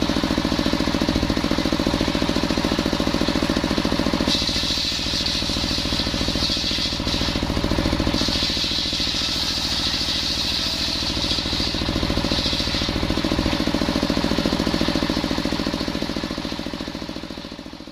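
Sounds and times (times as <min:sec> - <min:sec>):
saw blade cutting wood: 0:04.3 - 0:13.5.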